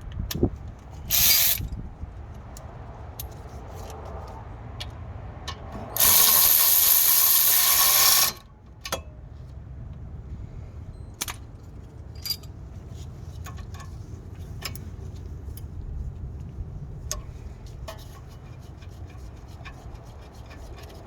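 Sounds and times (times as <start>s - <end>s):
power ratchet running: 1.1s - 1.6s, 6.0s - 8.4s.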